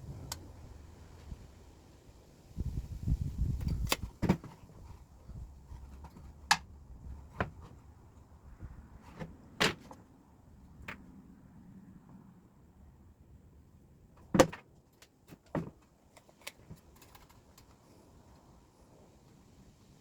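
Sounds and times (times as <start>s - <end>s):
wooden boards shuffling and rubbing: 3.5s - 8.0s, 8.7s - 10.0s
wooden boards clicking and knocking: 3.6s - 5.0s, 5.7s - 7.8s, 9.0s - 10.1s, 14.2s - 17.4s.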